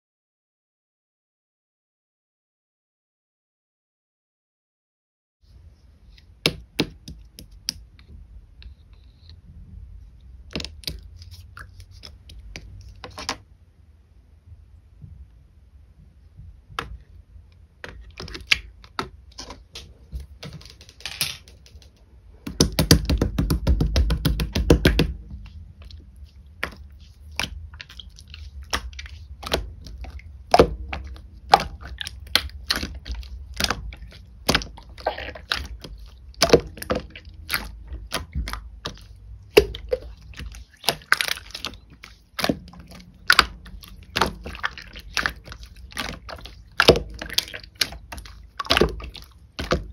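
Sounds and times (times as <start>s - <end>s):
slime clicking and popping: 26.6s - 49.9s.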